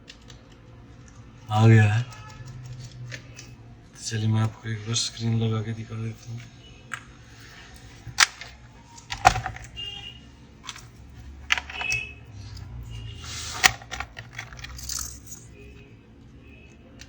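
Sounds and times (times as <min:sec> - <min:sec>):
laptop parts clicking and clattering: 0:00.0 - 0:03.7, 0:06.2 - 0:15.9.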